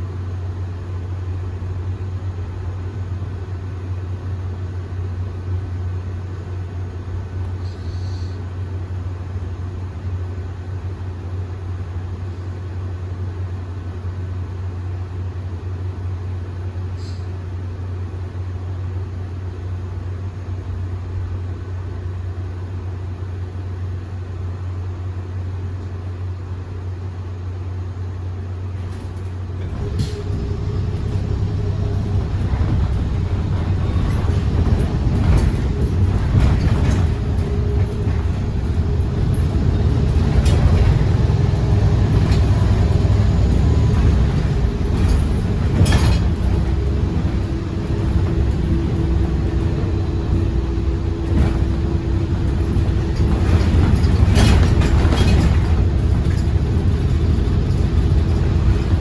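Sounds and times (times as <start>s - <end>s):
bus engine rumbling: 0.0s - 59.0s
knocks and rattles: 28.8s - 59.0s.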